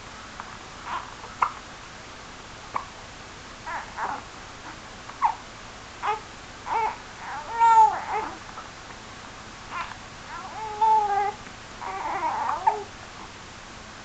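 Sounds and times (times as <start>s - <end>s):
baby whiny cry: 0.8s - 1.2s, 3.7s - 4.2s, 6.0s - 8.4s, 9.7s - 12.9s
babies hiccuping: 0.9s - 1.6s, 5.2s - 5.4s, 9.7s - 12.9s.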